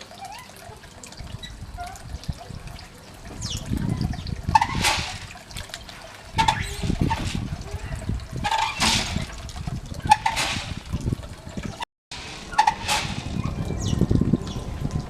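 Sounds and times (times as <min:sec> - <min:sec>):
water device clunk and ring: 0:00.0 - 0:14.0
water running and splashing: 0:00.0 - 0:15.0.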